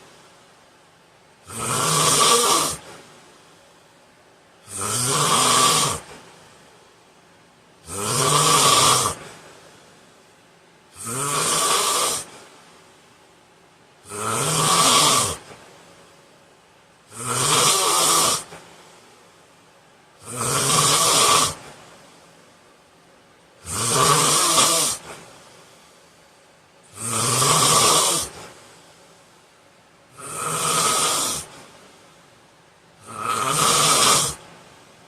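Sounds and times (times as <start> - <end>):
man snoring: 1.5 - 2.9, 4.6 - 6.1, 7.8 - 9.2, 11.0 - 12.3, 14.0 - 15.4, 17.1 - 18.5, 20.2 - 21.7, 23.6 - 25.1, 26.9 - 28.6, 30.1 - 31.5, 33.0 - 34.4.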